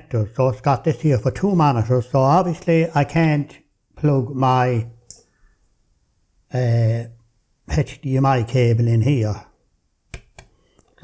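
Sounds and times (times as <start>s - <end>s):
man speaking: 0.0s - 5.1s, 6.5s - 9.6s.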